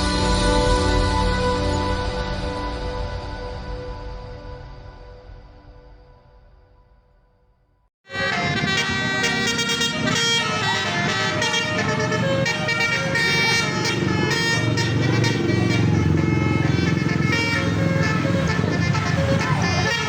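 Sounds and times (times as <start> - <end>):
air horns playing a tune: 8.1 - 20.0.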